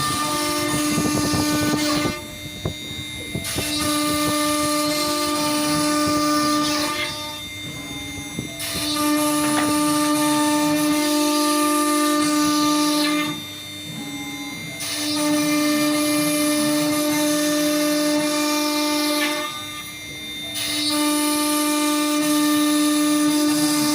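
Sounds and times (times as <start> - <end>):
router spindle high whine: 0.0 - 23.9.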